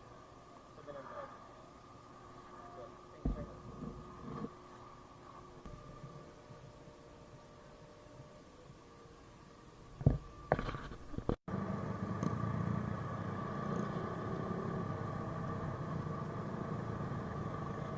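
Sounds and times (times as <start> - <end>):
scooter engine running: 11.5 - 17.9.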